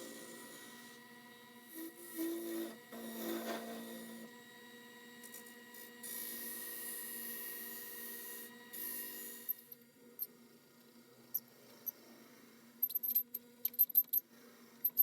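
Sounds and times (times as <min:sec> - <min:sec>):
lathe humming: 0:00.0 - 0:09.7.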